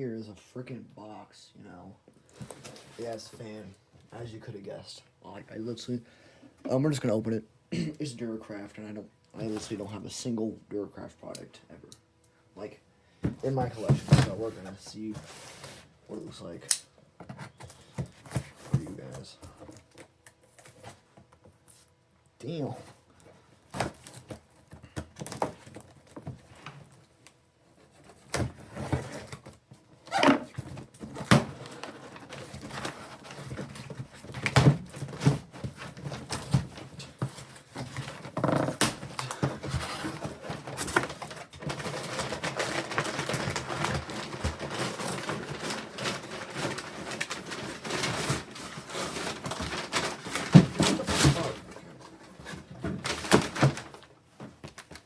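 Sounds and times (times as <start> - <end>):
rustling and scraping: 2.2 - 4.4, 13.3 - 16.6, 17.2 - 55.0.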